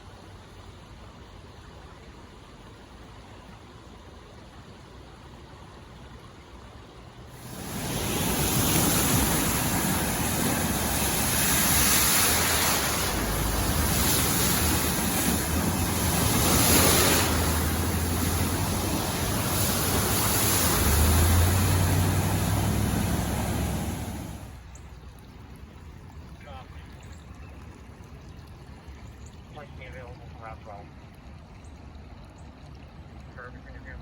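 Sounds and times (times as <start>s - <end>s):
low engine hum: 6.8s - 34.0s
water spraying from vehicle: 7.3s - 24.8s.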